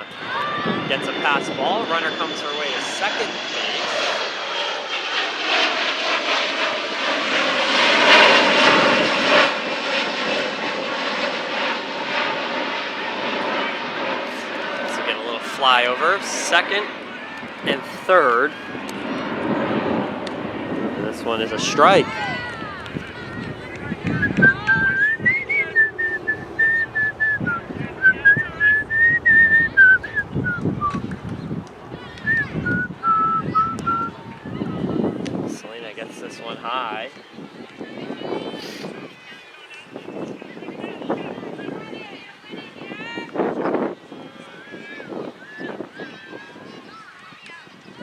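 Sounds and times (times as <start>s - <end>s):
airplane passing overhead: 0.0s - 48.0s
person whistling a tune: 32.3s - 34.1s.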